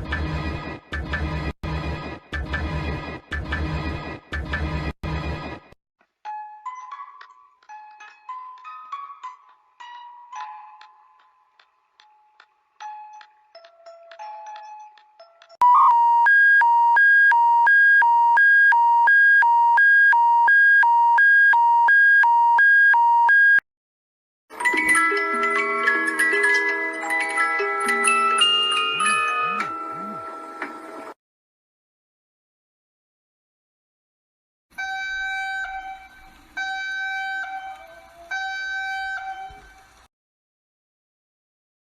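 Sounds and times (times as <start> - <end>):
electronic two-tone alert signal: 15.6 - 16.6
emergency alert beeps: 15.6 - 23.6
chime-like music notes: 24.6 - 30.6.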